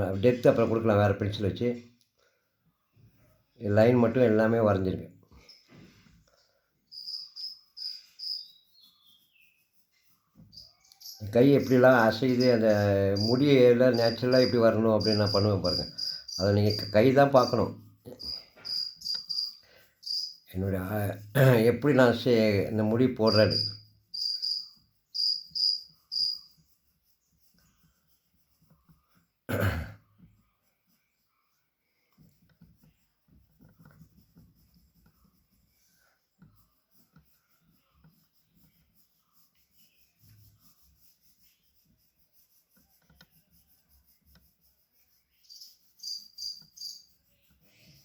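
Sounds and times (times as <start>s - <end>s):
pencil scratching on paper: 0.0s - 1.1s, 3.1s - 48.0s
cricket chirping: 6.9s - 8.5s, 13.2s - 16.9s, 18.2s - 20.4s, 23.3s - 26.5s, 45.5s - 47.0s.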